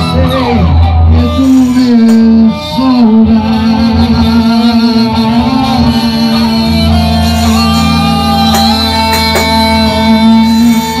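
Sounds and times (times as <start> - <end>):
live band playing worship song: 0.0 - 11.0
sharp percussive hits: 7.2 - 9.8.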